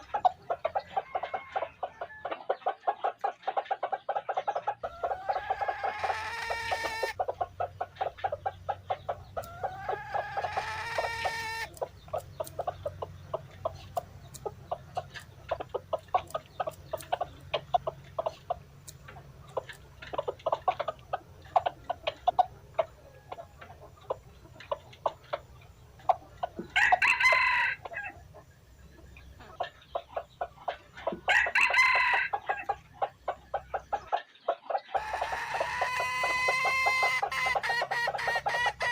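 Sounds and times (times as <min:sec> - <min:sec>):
chickens clucking: 0:00.0 - 0:38.9
rooster crowing: 0:01.0 - 0:02.4, 0:26.7 - 0:28.2, 0:31.3 - 0:32.7.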